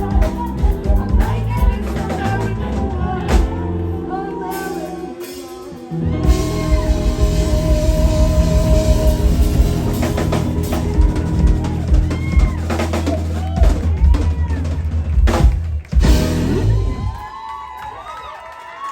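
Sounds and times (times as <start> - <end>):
live rock band: 0.0 - 17.4.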